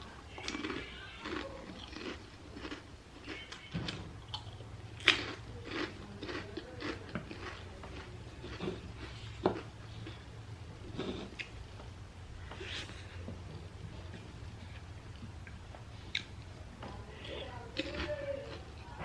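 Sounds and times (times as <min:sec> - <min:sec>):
chewing and crunching puffed rice: 0:00.0 - 0:11.6, 0:17.2 - 0:19.0.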